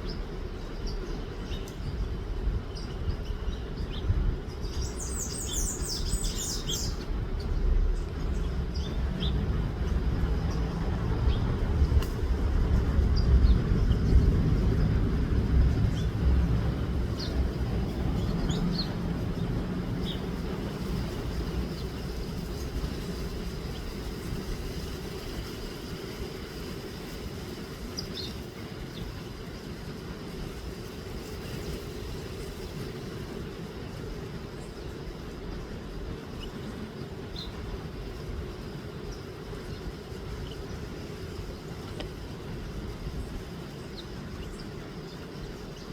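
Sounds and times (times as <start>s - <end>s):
passing vehicle rumble: 4.1s - 26.5s.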